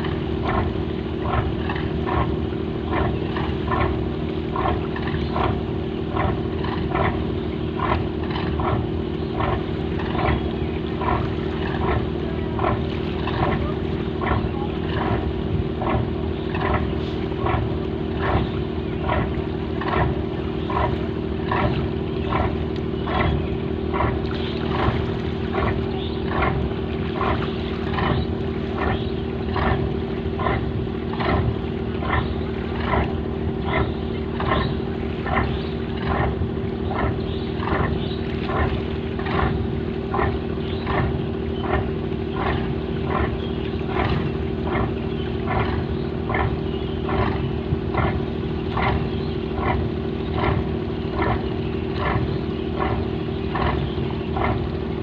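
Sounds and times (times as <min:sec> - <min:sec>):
diesel boat engine chugging: 0:00.0 - 0:55.0.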